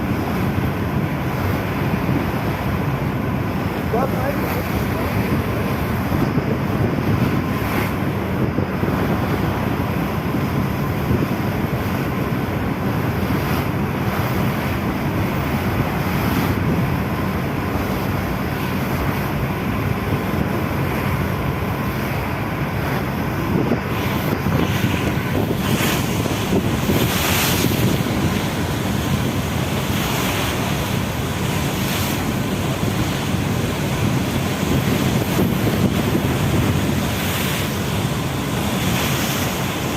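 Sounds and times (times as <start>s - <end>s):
waves rushing: 0.0s - 39.9s
wind buffeting microphone: 0.0s - 39.9s.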